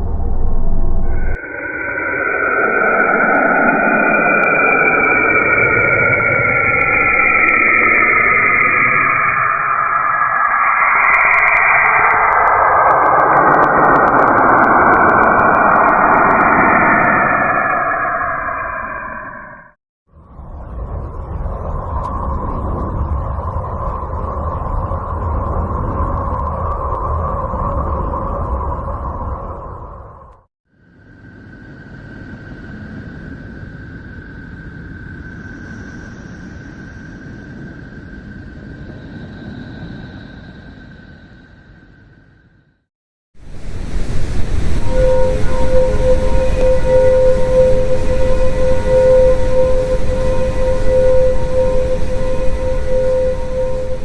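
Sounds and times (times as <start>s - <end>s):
high whistle-like tone: 0.0s - 30.4s, 43.5s - 54.0s
loud steady rushing noise: 43.4s - 54.0s
rumbling hiss: 43.4s - 54.0s.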